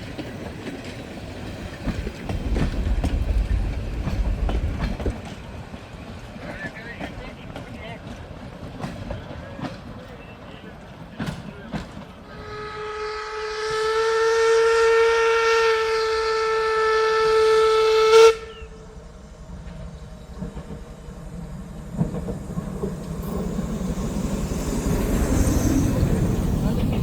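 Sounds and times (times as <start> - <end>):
low rumble: 2.3 - 5.2, 19.7 - 27.0
steam locomotive whistle: 12.3 - 18.9
steam hissing: 19.2 - 27.0.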